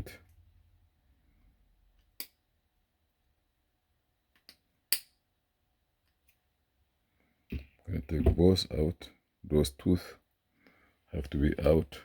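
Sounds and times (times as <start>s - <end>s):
sharp clicks of small tools: 4.4s - 5.2s.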